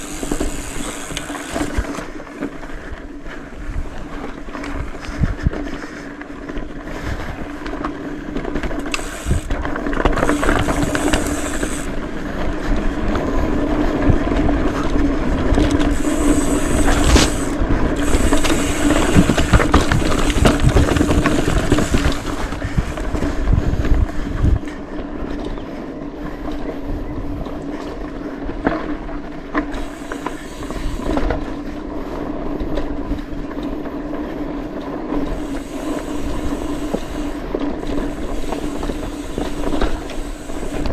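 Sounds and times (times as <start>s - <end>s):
bike tyres on rough dirt: 0.0s - 40.9s
wind on microphone: 2.8s - 7.7s, 8.4s - 40.9s.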